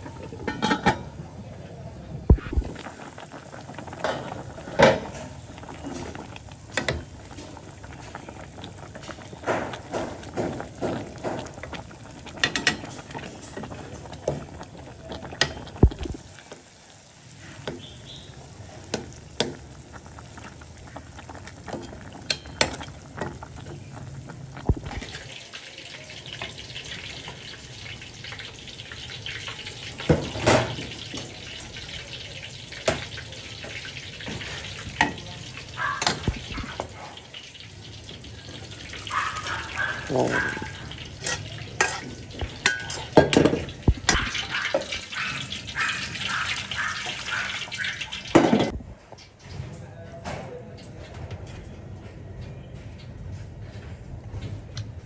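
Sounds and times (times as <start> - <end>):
utensils and cookware knocking: 0.4 - 1.1, 42.6 - 44.2
food sizzling in hot oil: 2.3 - 48.8.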